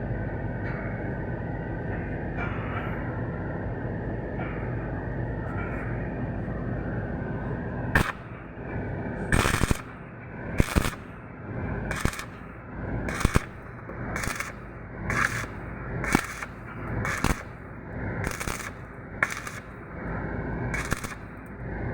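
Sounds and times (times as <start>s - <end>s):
machine noise: 0.0s - 21.9s
crackling welding arc bursts: 8.0s - 8.4s, 9.3s - 10.0s, 10.6s - 11.2s, 11.9s - 12.5s, 13.1s - 20.1s, 20.7s - 21.4s.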